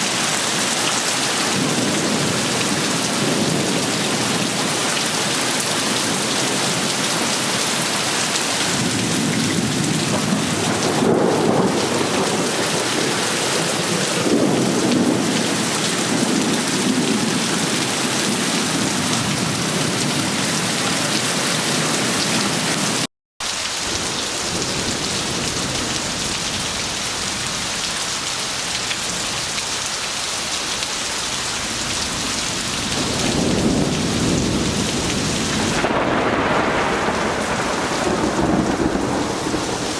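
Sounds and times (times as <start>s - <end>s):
heavy rain pouring: 0.0s - 39.9s
thunder rumbles: 1.5s - 6.9s, 8.6s - 20.5s, 23.8s - 27.9s, 31.3s - 39.9s.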